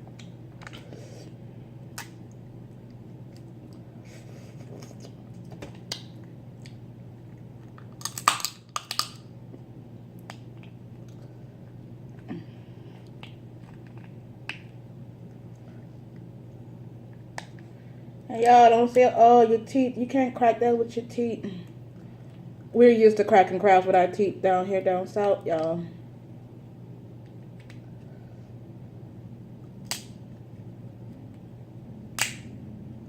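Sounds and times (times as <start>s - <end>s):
crab shell cracking: 7.6s - 9.3s.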